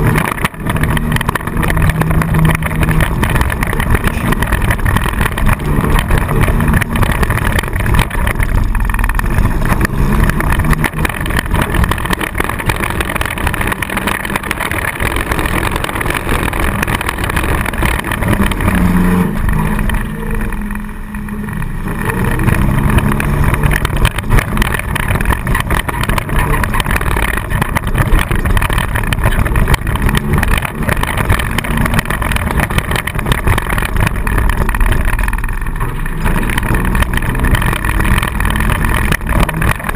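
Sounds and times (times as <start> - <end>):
car engine revving: 0.0 - 39.9.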